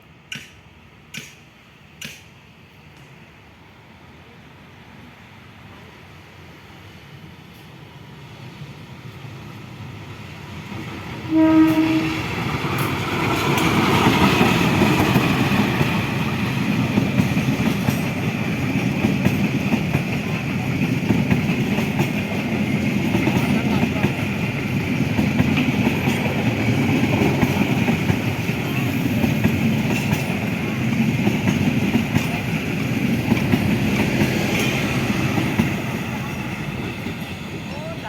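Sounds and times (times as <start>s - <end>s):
train wheels rumbling on rails: 0.2s - 3.9s, 6.4s - 38.0s
train horn blast: 11.3s - 12.4s.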